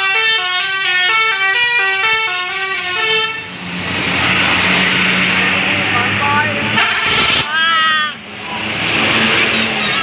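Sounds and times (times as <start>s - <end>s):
musical bus air horn: 0.0s - 3.6s, 6.7s - 7.4s
rushing noise: 3.4s - 10.0s.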